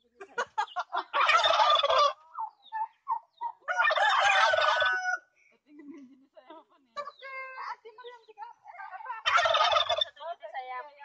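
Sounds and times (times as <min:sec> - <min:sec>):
turkey gobbling: 0:00.6 - 0:05.2, 0:08.8 - 0:10.2.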